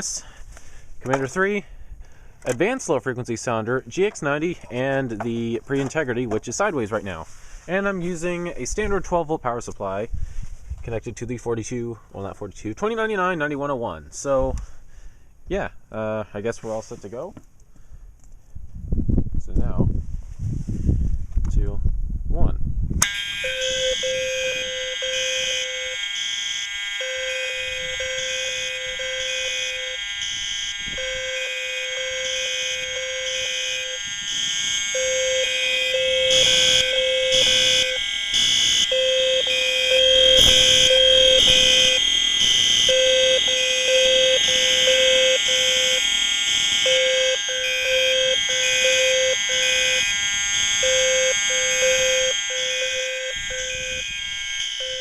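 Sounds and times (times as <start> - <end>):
low alarm tone: 0.0 - 0.4, 23.0 - 55.0
fire alarm horns blaring: 0.0 - 8.9, 23.0 - 55.0.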